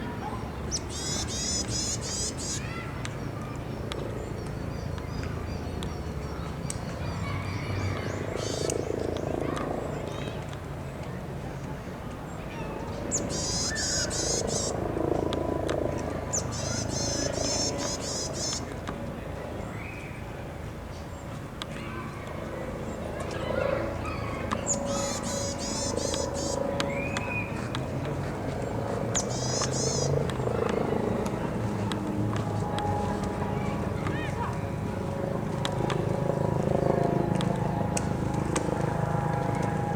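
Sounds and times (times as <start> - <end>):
steady low hum: 20.7 - 39.9.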